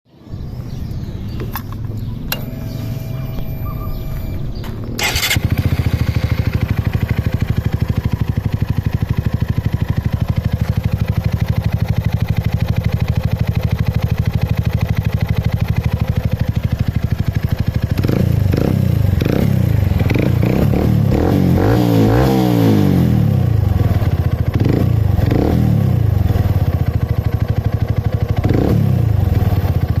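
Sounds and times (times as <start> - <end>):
motorcycle engine idling and revving: 0.2 - 30.0
starter motor whirring: 4.2 - 6.5.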